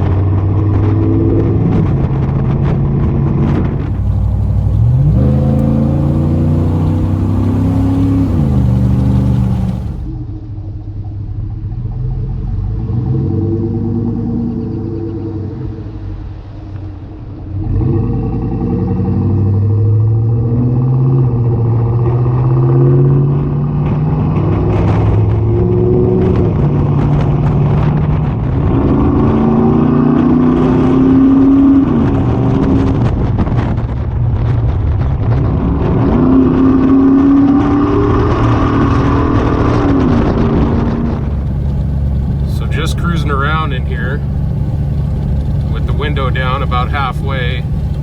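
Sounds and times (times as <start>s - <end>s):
truck engine accelerating: 3.5s - 10.2s, 35.2s - 48.0s.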